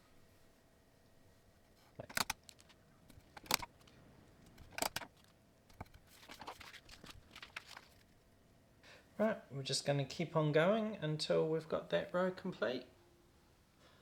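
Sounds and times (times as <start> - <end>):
paper and sticky tape rustling: 2.0 - 8.2.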